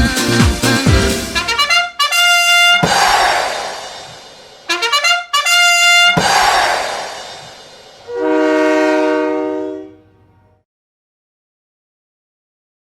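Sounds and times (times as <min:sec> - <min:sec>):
brassy arena goal music: 0:00.0 - 0:03.6, 0:04.7 - 0:07.1, 0:08.0 - 0:10.0.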